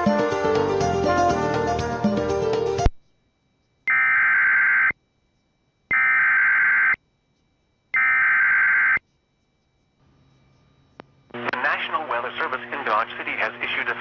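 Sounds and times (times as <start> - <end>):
digital data tone bursts: 3.9 - 5.0, 5.9 - 7.0, 8.0 - 9.0.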